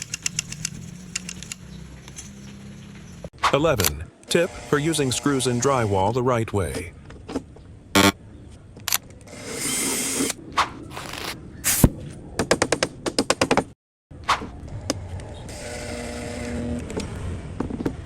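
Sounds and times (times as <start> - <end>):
rapid clicks: 0.0 - 2.3
power drill driving screws: 15.5 - 16.9.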